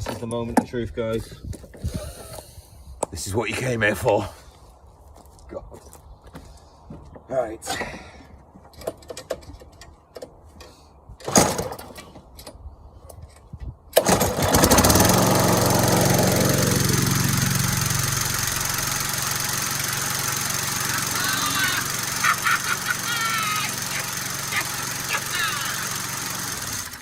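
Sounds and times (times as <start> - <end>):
lawn mower pull-start: 11.2 - 12.5, 13.9 - 27.0
lawn mower engine running: 14.0 - 27.0.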